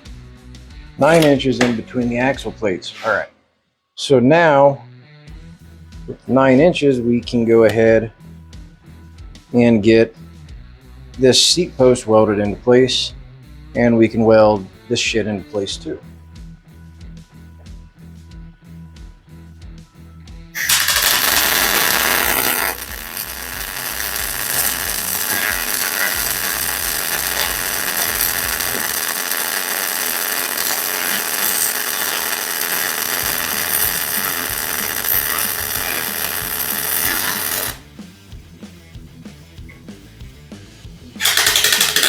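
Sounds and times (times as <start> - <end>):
welding arc crackling and buzzing: 1.0 - 1.7, 20.6 - 37.8, 41.2 - 42.0.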